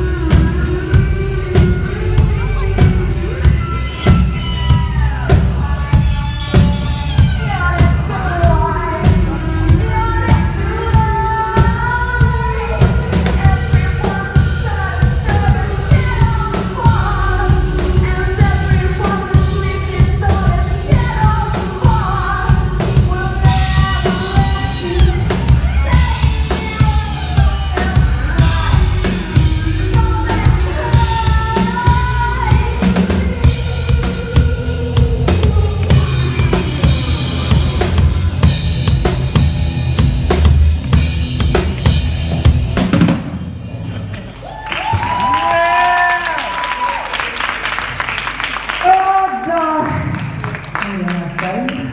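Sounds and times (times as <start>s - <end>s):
drum kit beat: 0.0s - 49.2s
live band playing: 0.0s - 51.9s.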